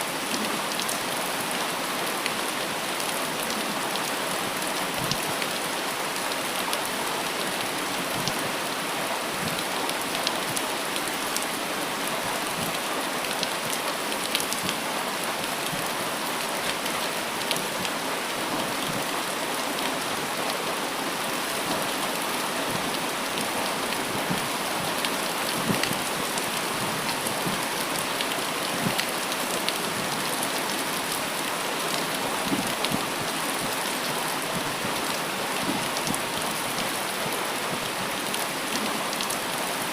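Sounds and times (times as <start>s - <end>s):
raindrops pattering on leaves: 0.0s - 39.9s
steady rain hiss: 0.0s - 39.9s.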